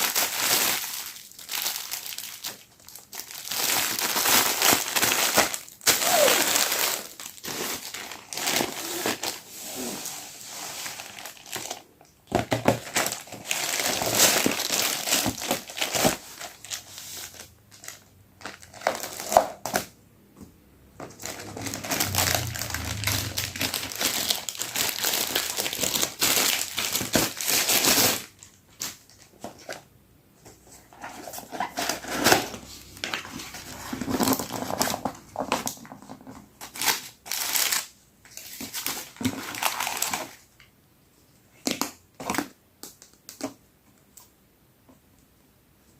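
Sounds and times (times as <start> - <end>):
packaging crinkling: 0.0 - 9.9, 12.4 - 19.9, 21.0 - 29.2, 36.6 - 40.4.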